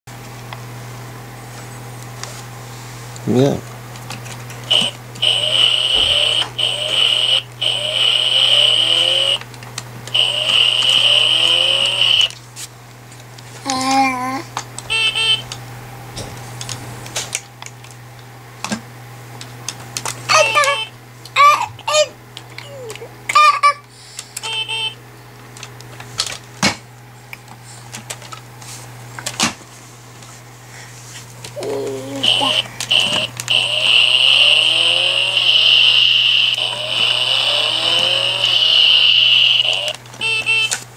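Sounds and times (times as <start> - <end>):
steady low hum: 0.3 - 40.9
high-pitched electronic tone: 4.7 - 9.4, 10.2 - 12.3, 32.2 - 40.0.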